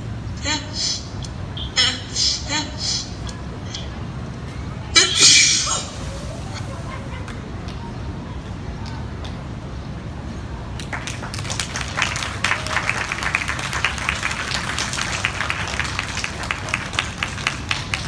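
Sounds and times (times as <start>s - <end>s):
audience clapping: 10.8s - 18.0s.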